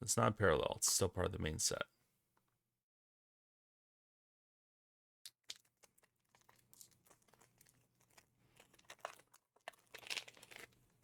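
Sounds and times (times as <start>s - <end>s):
wrapper crinkling and cards rustling: 5.3s - 11.0s.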